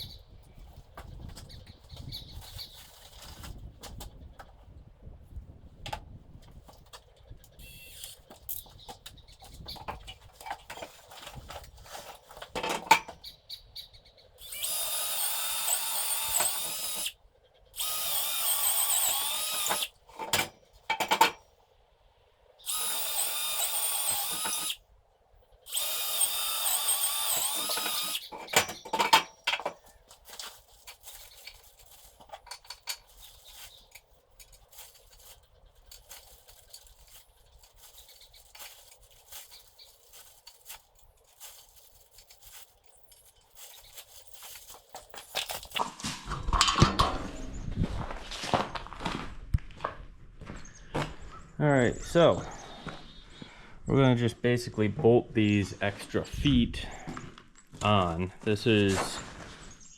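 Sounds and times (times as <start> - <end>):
power drill whining: 7.6 - 8.2, 14.4 - 17.2, 17.8 - 20.5, 22.6 - 24.8, 25.7 - 29.2
tools being handled knocks: 19.7 - 21.5, 27.5 - 47.2.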